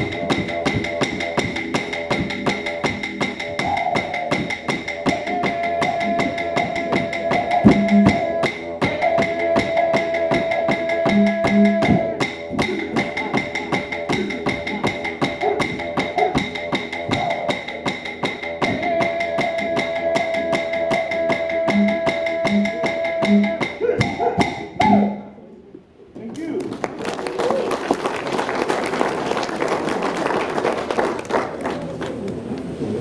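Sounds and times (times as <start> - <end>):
clapsticks struck in fast rhythm: 0.0 - 21.1
long held notes: 0.0 - 25.7.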